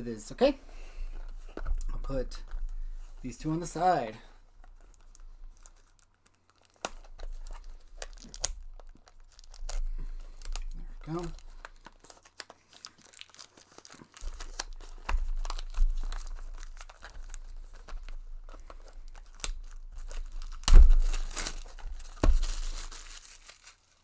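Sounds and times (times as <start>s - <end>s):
packaging tearing and crinkling: 3.5s - 24.0s
packaging ripping loudly: 4.9s - 24.0s.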